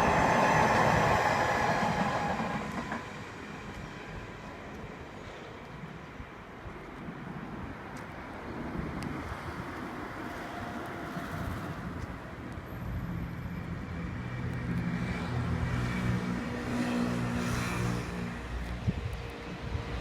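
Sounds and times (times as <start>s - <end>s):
electric train motor hum and rolling: 0.0s - 7.7s.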